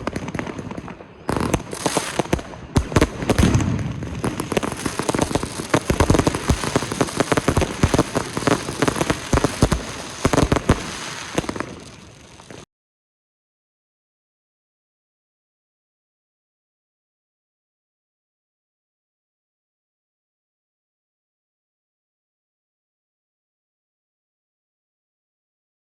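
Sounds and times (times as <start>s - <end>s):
fireworks bangs and crackling: 0.0s - 12.7s.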